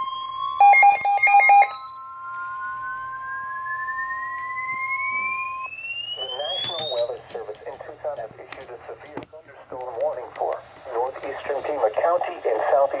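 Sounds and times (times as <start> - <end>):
siren-like rising tone: 0.0 - 7.2
steady high alert tone: 0.0 - 7.4
rapid burst of beeps: 0.6 - 7.4.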